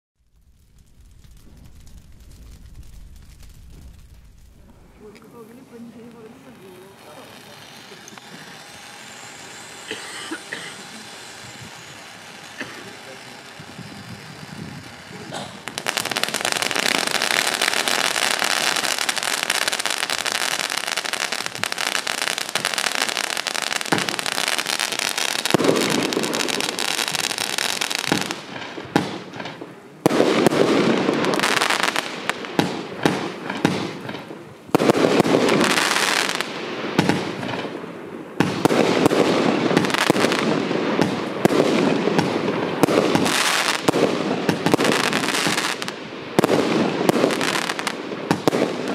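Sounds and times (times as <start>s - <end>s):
firework battery firing: 0.2s - 48.9s.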